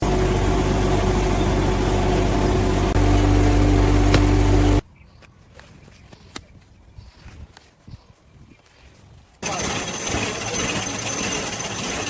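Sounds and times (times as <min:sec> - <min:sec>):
factory machinery humming: 0:00.0 - 0:04.8, 0:09.4 - 0:12.0.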